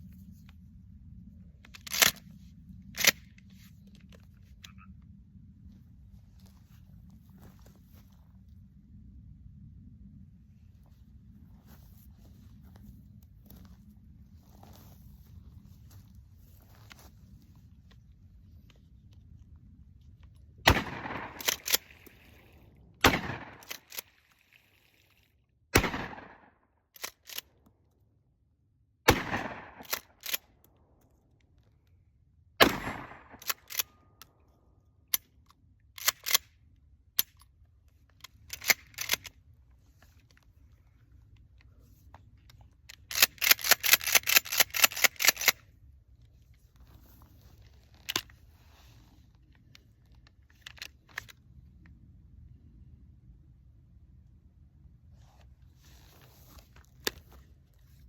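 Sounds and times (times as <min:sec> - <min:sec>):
shotgun shots: 0:20.7 - 0:21.9, 0:23.0 - 0:23.7, 0:25.8 - 0:26.4, 0:29.1 - 0:29.9, 0:32.6 - 0:33.4.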